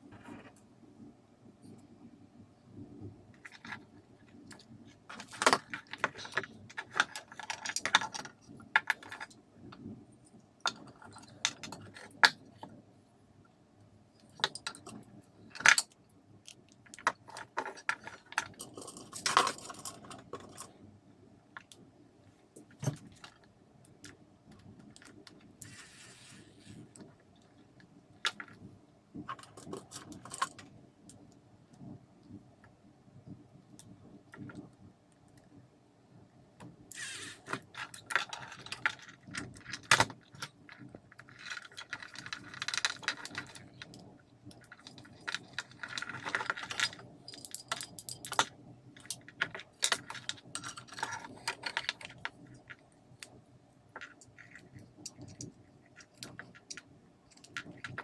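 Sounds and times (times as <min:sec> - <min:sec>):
small parts and tools clinking: 0:14.2 - 0:20.7, 0:36.9 - 0:58.0.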